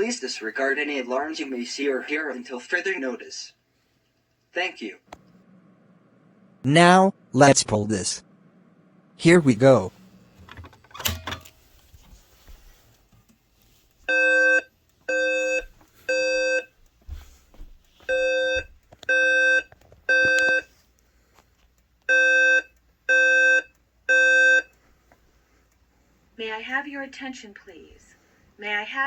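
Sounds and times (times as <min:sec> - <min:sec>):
fire alarm pull station clack: 0:10.4 - 0:11.5
alarm beeps from speakers: 0:14.1 - 0:16.7, 0:18.1 - 0:20.7, 0:22.1 - 0:24.7.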